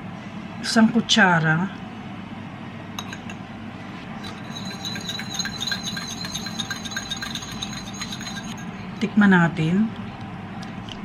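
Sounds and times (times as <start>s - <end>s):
spoon clinking against bowl: 3.0s - 3.4s, 4.2s - 8.6s.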